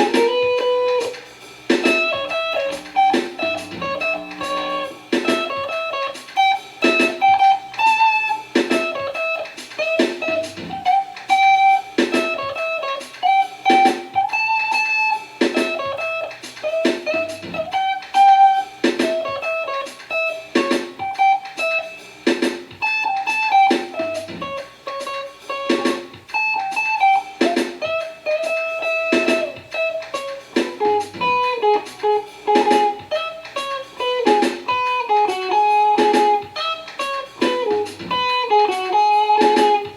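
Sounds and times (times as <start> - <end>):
jazz instrumental music: 0.0 - 39.9.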